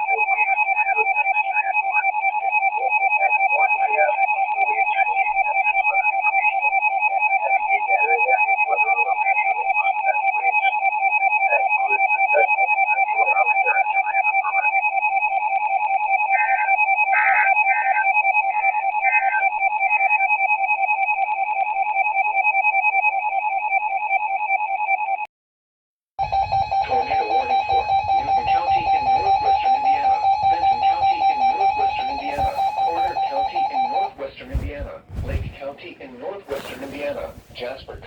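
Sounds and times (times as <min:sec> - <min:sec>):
steady emergency alert tone: 0:00.0 - 0:25.2, 0:26.2 - 0:35.1
rapid electronic alert beeps: 0:26.2 - 0:34.2
faint shifting sound: 0:26.3 - 0:38.0.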